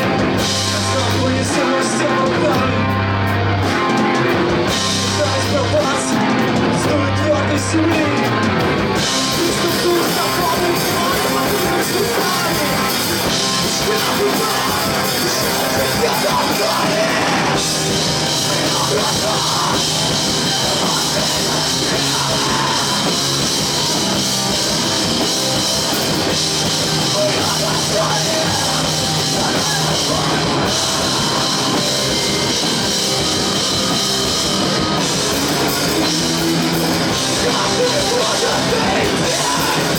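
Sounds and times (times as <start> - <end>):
person singing: 0.0 - 3.0, 9.2 - 33.2, 35.0 - 39.9
rock band playing: 0.0 - 39.9.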